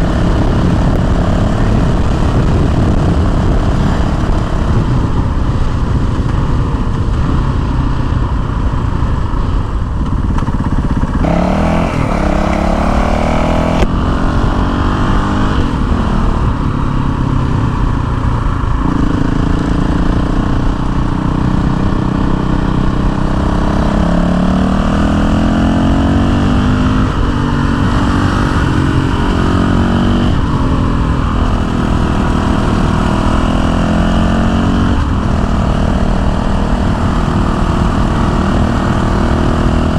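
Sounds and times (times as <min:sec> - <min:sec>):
motorcycle engine revving: 0:00.0 - 0:39.9
steady rushing noise: 0:08.4 - 0:16.9.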